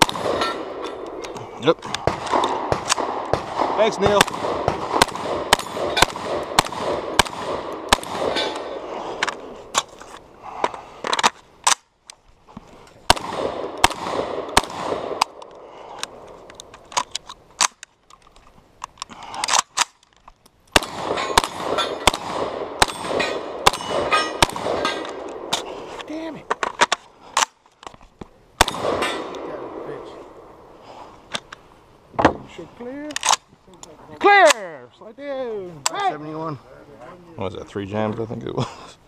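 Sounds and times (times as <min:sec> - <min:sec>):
shotgun rapid firing: 0:00.0 - 0:00.8, 0:02.0 - 0:08.8, 0:13.1 - 0:15.4, 0:20.8 - 0:25.5, 0:28.6 - 0:29.5.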